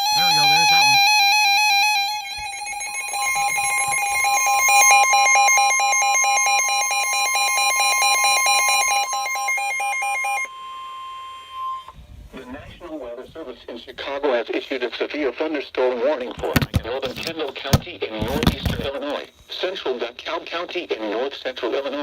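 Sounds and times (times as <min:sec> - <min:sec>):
steady high alarm tone: 0:00.0 - 0:12.0.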